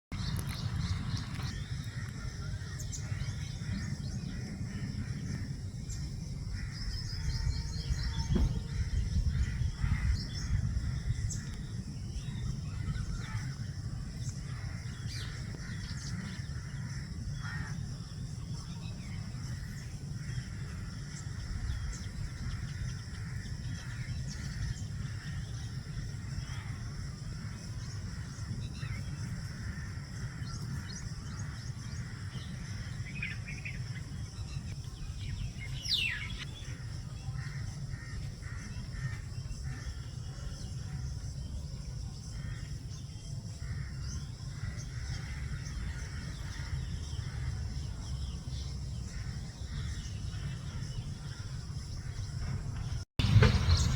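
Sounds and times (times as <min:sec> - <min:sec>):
low rumble: 0:00.1 - 0:30.8, 0:43.8 - 0:53.9.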